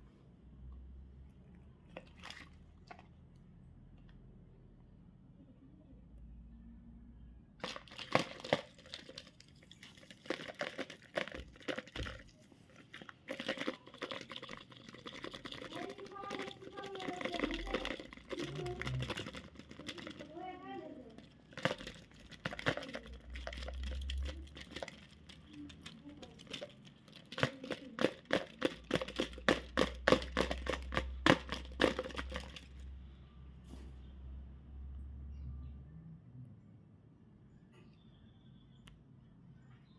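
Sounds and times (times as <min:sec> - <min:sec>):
wrapper crinkling and tearing: 0:07.6 - 0:20.3, 0:21.1 - 0:32.8
packaging crackling and crunching: 0:07.6 - 0:32.9.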